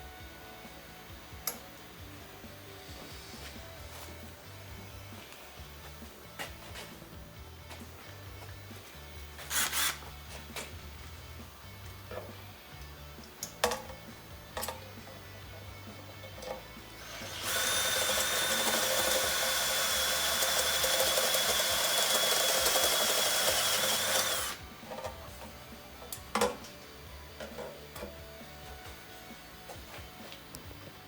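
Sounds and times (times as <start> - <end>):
small electric motor whirring: 9.4 - 10.1, 16.9 - 24.7.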